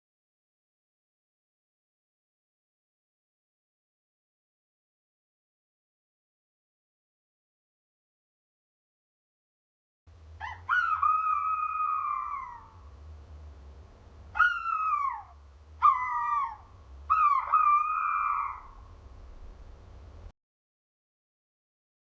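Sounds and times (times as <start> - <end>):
faint low hum: 10.1 - 20.3
owl calling: 10.4 - 12.9, 14.3 - 19.0.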